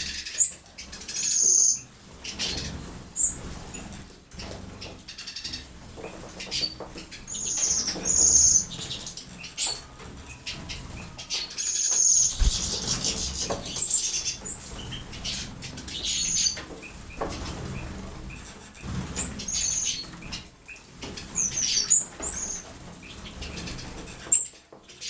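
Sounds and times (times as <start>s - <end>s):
short high bird chirps: 12.0s - 13.4s
bird wings fluttering and splashing: 12.0s - 15.4s.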